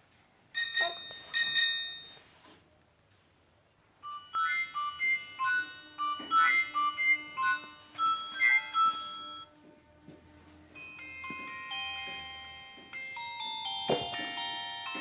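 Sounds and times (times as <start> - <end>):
high-pitched ringtone melody: 0.6 - 2.2, 4.0 - 9.6, 10.8 - 15.0
bright chiming chords: 10.8 - 15.0.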